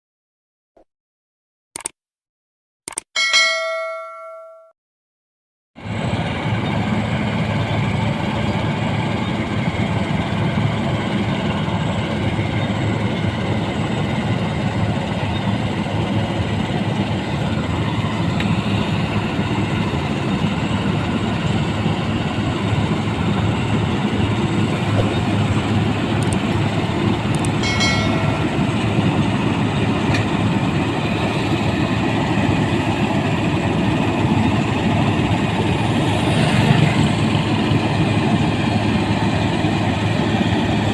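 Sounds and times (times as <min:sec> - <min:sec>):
combine harvester engine drone: 0:05.8 - 0:40.9.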